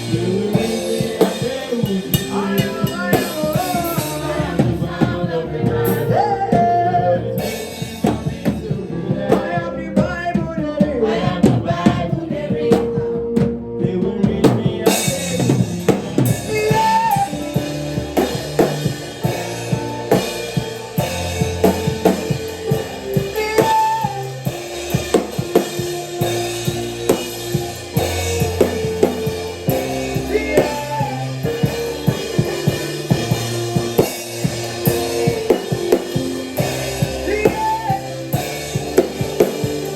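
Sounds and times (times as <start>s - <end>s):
band music: 0.0s - 39.9s
drum kit beat: 0.0s - 39.9s
cymbals: 14.9s - 39.9s.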